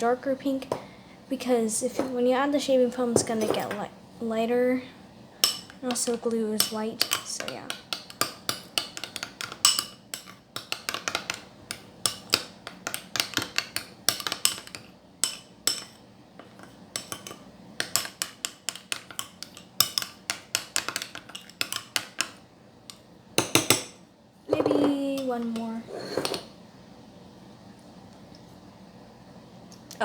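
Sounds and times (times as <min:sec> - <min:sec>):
utensil clinking against bowl: 0:05.4 - 0:22.4.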